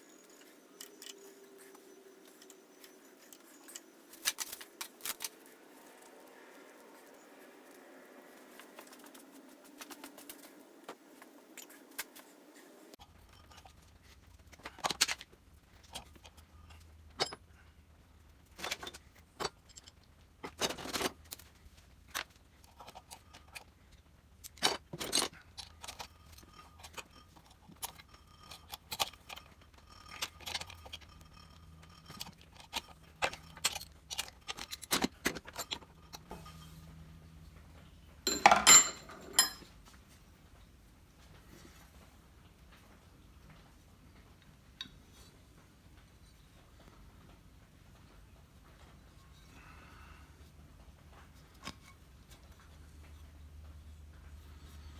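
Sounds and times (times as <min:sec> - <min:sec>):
low steady hum: 0:00.0 - 0:54.9
light metallic clicks and clinks: 0:38.3 - 0:39.7.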